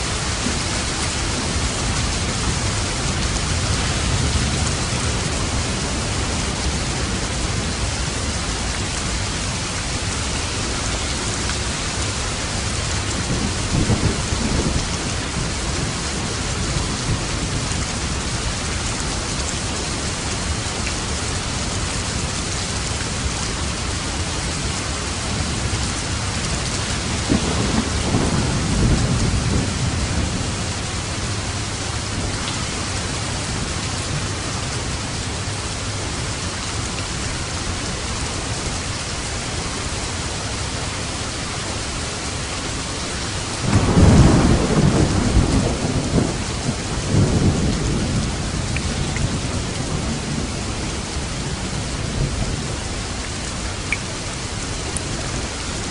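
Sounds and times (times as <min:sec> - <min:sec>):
steady rain: 0:00.0 - 0:55.9
thunder rumbling: 0:24.6 - 0:34.4, 0:43.6 - 0:53.7.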